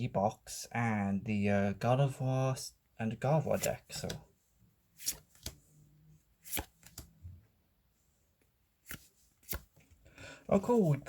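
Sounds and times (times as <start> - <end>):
trading cards flicking: 6.5 - 7.1, 8.9 - 9.7.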